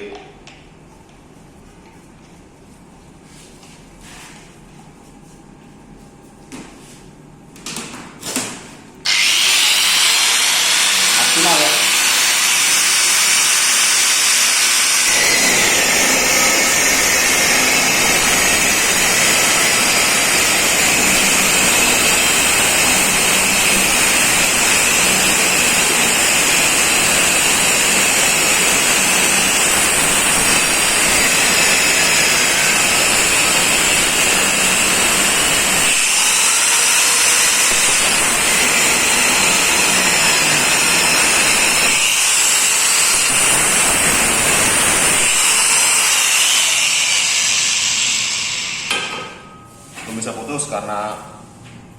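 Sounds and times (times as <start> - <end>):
grinder disc cutting: 9.0 - 49.0
angle grinder whining: 9.0 - 49.1.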